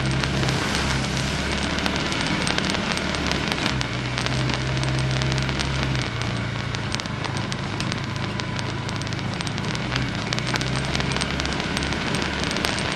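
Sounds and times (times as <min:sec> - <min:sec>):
off-road vehicle engine: 0:00.0 - 0:12.9
tyres crackling over rough ground: 0:00.0 - 0:12.9.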